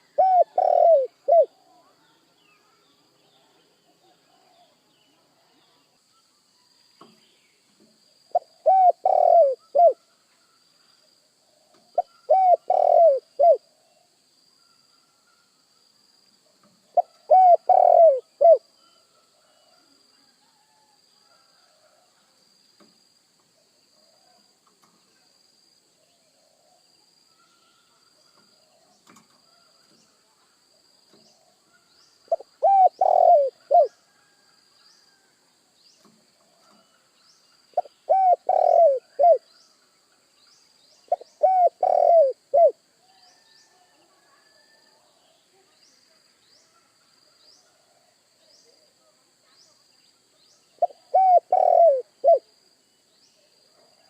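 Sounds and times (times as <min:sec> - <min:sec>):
dove cooing: 0:00.0 - 0:01.6, 0:08.3 - 0:10.0, 0:11.9 - 0:13.7, 0:16.9 - 0:18.6, 0:32.3 - 0:34.3, 0:37.8 - 0:39.4, 0:41.1 - 0:42.8, 0:50.8 - 0:52.5
high-pitched insect hum: 0:06.1 - 0:21.4, 0:22.2 - 0:43.8, 0:49.4 - 0:53.5.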